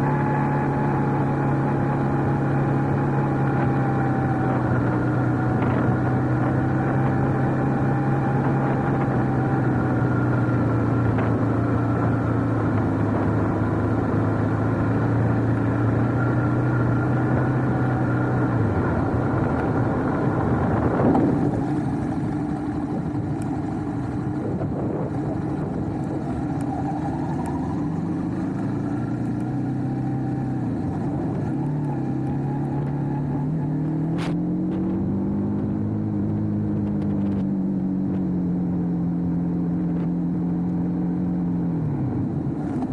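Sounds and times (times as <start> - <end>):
motorcycle engine idling and revving: 0.0 - 42.9.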